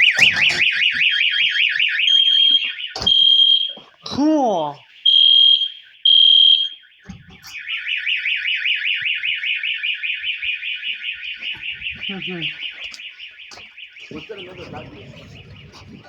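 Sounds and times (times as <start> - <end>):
fire alarm beeping and warbling: 0.0 - 16.0.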